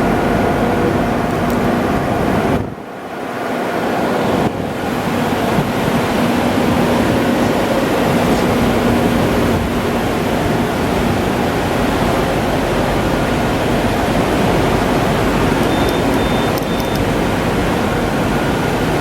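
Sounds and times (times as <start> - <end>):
machinery noise: 3.8 - 19.0
clicks: 15.6 - 17.1
short high beeps: 15.6 - 17.1.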